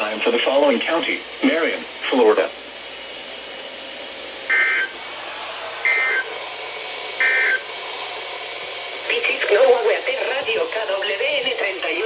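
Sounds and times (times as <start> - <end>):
emergency alert data tones: 4.5 - 4.9, 5.9 - 6.3, 7.2 - 7.6.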